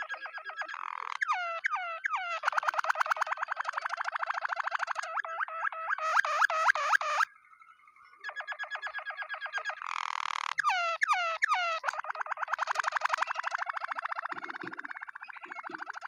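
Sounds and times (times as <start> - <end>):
canary singing: 0.0 - 7.3, 8.2 - 16.0.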